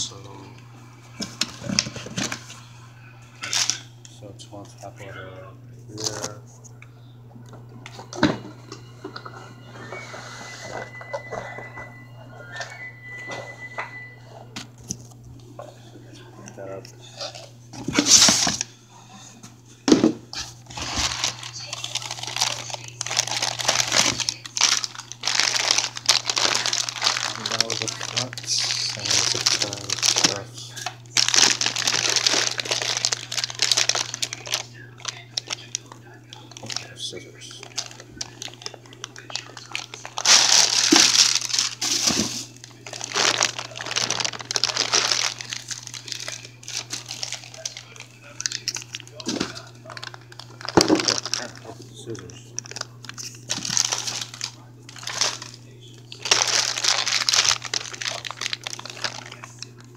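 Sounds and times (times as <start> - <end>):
packaging crinkling: 1.1 - 2.8, 3.4 - 3.9, 16.4 - 18.7, 20.4 - 59.9.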